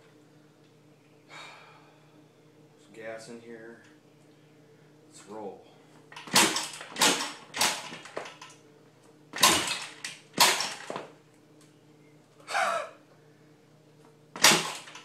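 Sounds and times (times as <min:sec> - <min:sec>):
kick starter strokes clattering: 0:06.2 - 0:08.5, 0:09.4 - 0:11.1, 0:14.4 - 0:15.0.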